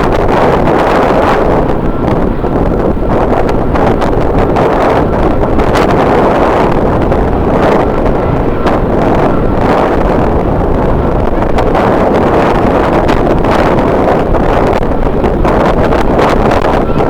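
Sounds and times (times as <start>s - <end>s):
strong wind on microphone: 0.0s - 17.0s.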